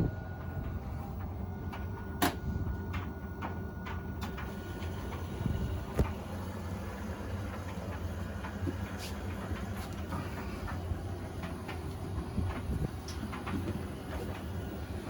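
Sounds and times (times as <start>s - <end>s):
washing machine humming: 0.0s - 15.0s
washing machine clicks: 0.4s - 6.4s.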